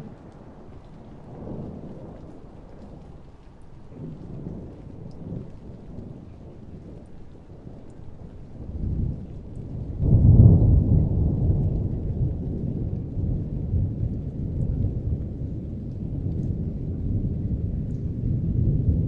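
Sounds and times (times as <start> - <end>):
thunder rumble and clap: 1.3 - 19.0.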